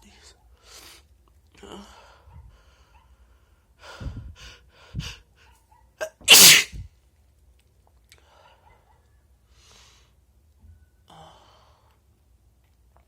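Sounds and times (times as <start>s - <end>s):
person sneezing: 6.3s - 6.8s.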